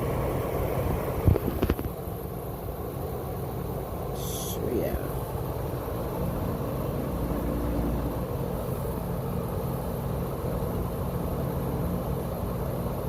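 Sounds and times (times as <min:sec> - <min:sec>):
dehumidifier compressor humming: 0:00.0 - 0:13.0.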